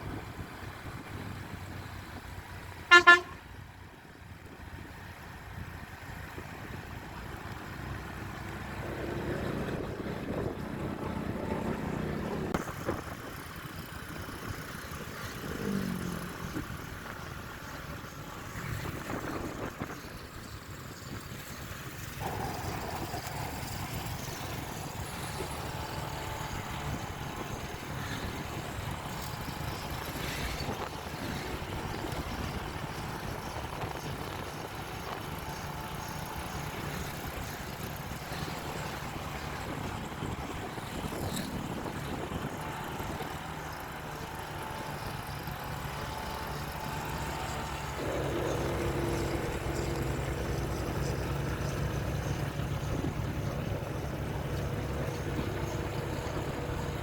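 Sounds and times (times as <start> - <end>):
road noise: 0.0 - 57.0
vehicle engines rumbling: 0.0 - 57.0.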